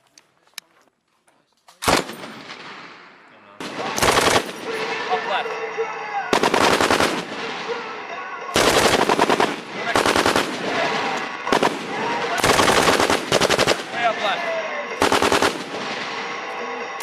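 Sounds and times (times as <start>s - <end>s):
machine gun automatic fire: 3.6s - 4.6s, 6.3s - 7.5s, 8.6s - 14.0s, 15.0s - 16.0s.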